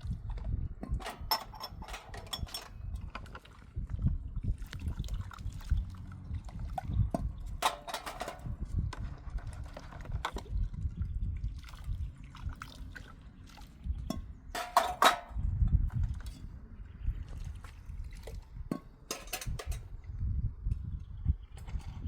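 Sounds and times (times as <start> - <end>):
water splashing and dripping: 1.3 - 7.8, 9.6 - 14.9, 17.1 - 19.0.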